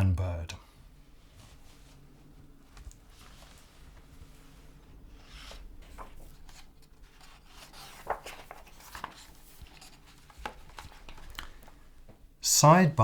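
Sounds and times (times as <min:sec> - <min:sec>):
paper rustling and tapping: 0:05.8 - 0:12.2.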